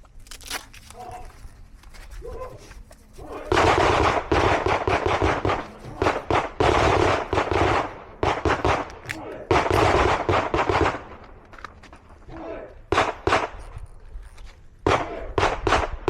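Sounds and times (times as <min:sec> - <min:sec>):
pistol shots: 0:03.3 - 0:11.4, 0:12.9 - 0:13.7, 0:14.8 - 0:16.0.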